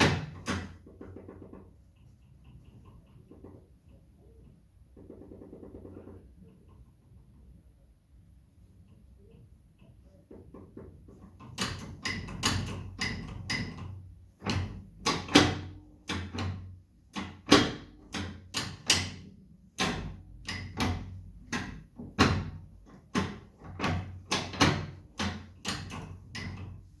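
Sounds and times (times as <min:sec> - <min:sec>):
faint low hum: 0:00.0 - 0:27.0.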